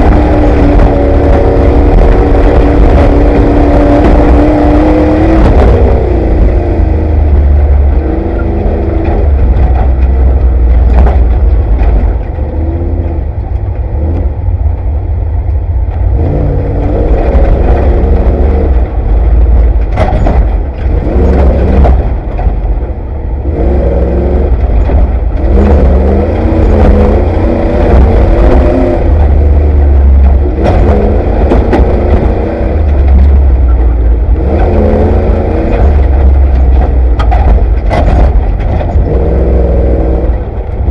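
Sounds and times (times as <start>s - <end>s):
engine revving: 0.0s - 15.2s, 15.8s - 40.9s
chassis knocks and rattles: 0.0s - 16.1s, 16.7s - 23.4s, 24.3s - 40.9s.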